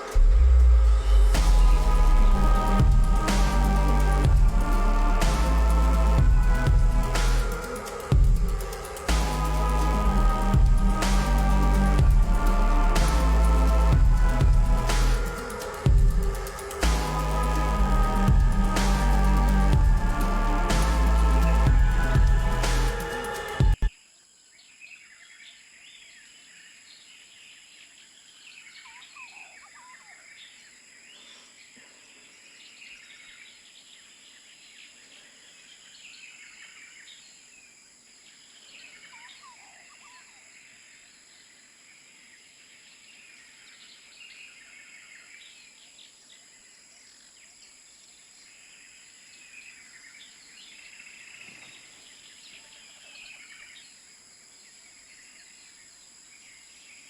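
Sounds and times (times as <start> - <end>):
steady high-pitched hum: 0.0 - 23.9.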